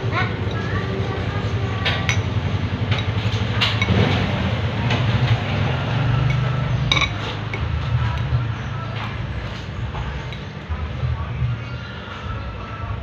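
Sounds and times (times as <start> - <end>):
tableware clinking: 1.9 - 4.0, 6.2 - 7.7.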